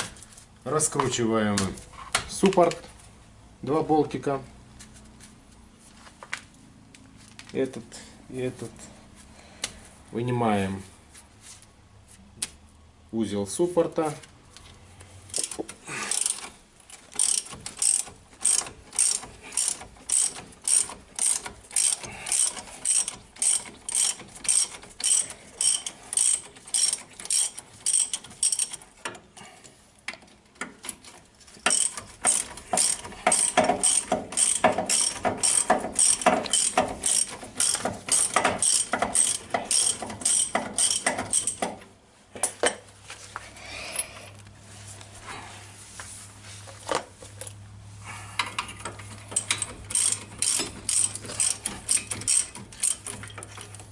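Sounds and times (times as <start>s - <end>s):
ratchet wrench clicking: 15.3s - 16.5s, 17.1s - 29.2s, 31.6s - 41.7s, 48.4s - 53.8s.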